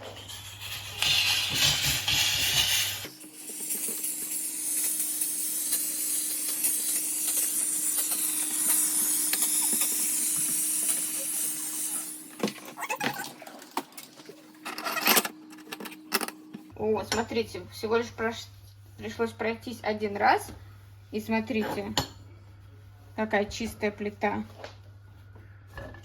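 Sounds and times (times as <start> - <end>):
steam cleaner hissing: 0.0 - 12.4.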